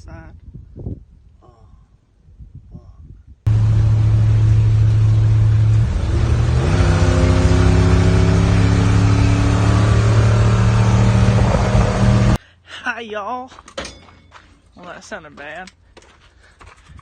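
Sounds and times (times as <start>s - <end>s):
truck engine revving: 3.5s - 12.4s.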